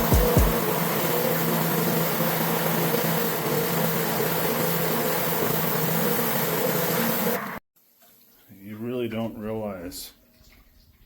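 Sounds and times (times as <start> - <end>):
pressure washer engine hum: 0.0 - 7.4.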